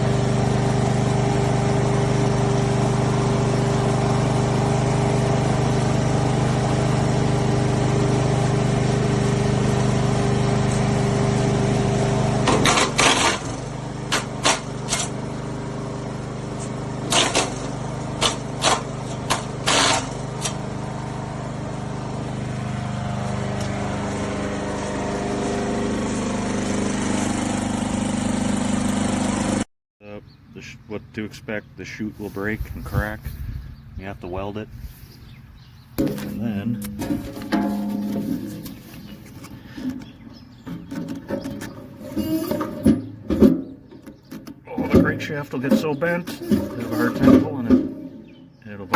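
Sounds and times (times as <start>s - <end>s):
wood chipper engine running: 0.0s - 29.6s, 30.2s - 48.9s.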